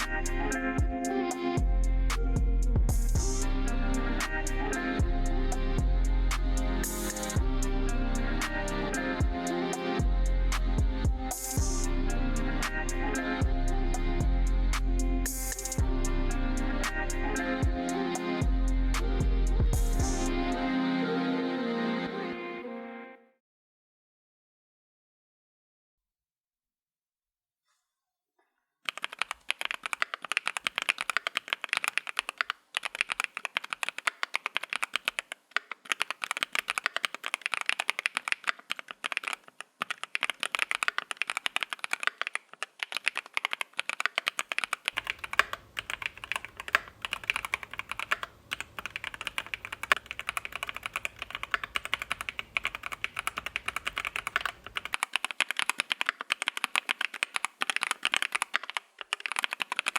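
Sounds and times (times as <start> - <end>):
rapid mechanical keyboard typing: 28.9 - 59.9.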